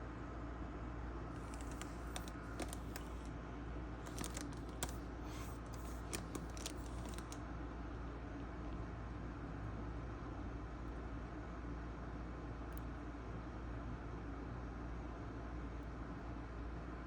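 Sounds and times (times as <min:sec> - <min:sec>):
light clicks and ticks: 0:01.4 - 0:03.3, 0:04.0 - 0:07.4.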